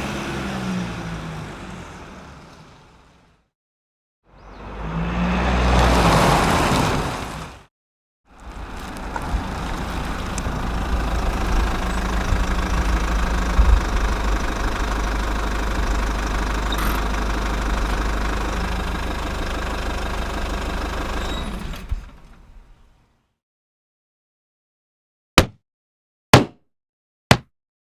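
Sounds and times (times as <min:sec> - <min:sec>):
engine low rumble: 0:00.0 - 0:03.5, 0:08.3 - 0:23.2.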